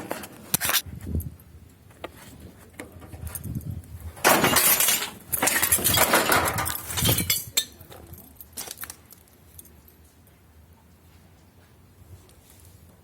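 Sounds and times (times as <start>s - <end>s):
hard objects clattering: 4.2s - 7.8s.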